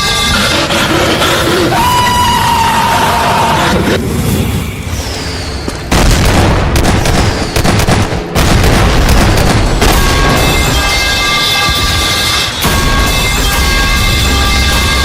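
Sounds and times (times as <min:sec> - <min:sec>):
explosion sound effects: 0:03.6 - 0:10.9.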